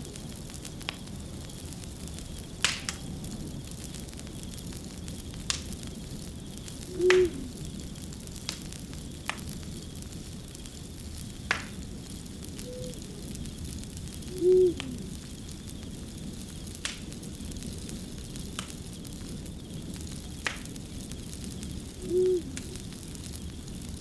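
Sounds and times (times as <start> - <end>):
fire crackling and popping: 0.0 - 24.0
owl hoot: 6.9 - 7.5, 12.6 - 13.4, 14.2 - 15.2, 22.0 - 22.8.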